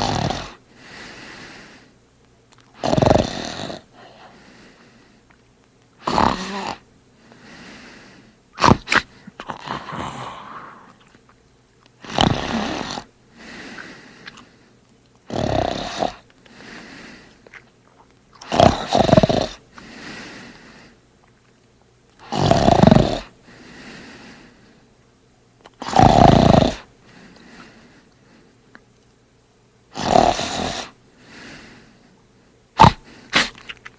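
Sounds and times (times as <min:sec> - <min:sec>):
man snoring loudly: 0:00.0 - 0:00.6, 0:02.8 - 0:04.3, 0:06.0 - 0:06.8, 0:09.5 - 0:11.0, 0:12.0 - 0:13.1, 0:15.3 - 0:16.2, 0:18.4 - 0:19.6, 0:22.2 - 0:23.3, 0:25.8 - 0:26.9, 0:29.9 - 0:31.0, 0:32.8 - 0:33.1
short sharp snorts: 0:00.0 - 0:00.6, 0:02.8 - 0:04.4, 0:06.0 - 0:06.8, 0:08.6 - 0:11.0, 0:12.0 - 0:14.5, 0:15.3 - 0:16.2, 0:18.4 - 0:19.9, 0:22.2 - 0:23.3, 0:25.8 - 0:27.8, 0:29.9 - 0:31.0, 0:32.8 - 0:33.9
soft breathing: 0:00.0 - 0:02.0, 0:03.8 - 0:05.4, 0:06.4 - 0:08.4, 0:09.0 - 0:11.2, 0:12.4 - 0:14.9, 0:15.8 - 0:17.6, 0:19.7 - 0:21.0, 0:23.2 - 0:25.0, 0:27.0 - 0:28.7, 0:30.4 - 0:33.8.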